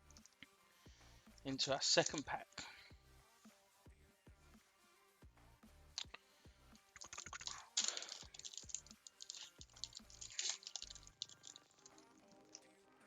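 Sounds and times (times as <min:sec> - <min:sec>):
foil wrapper crinkling and tearing: 0:07.0 - 0:12.5.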